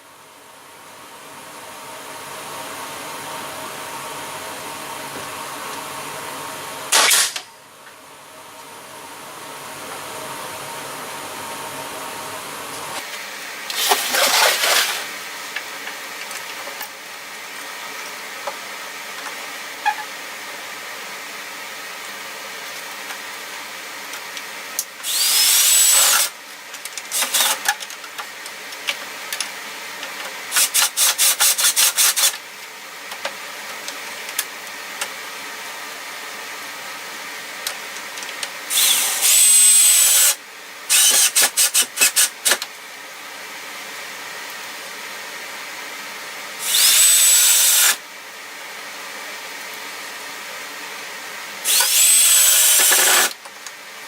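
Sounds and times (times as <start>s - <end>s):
electric drill whining: 25.0s - 26.3s, 38.7s - 42.6s, 46.6s - 48.0s, 51.6s - 53.4s.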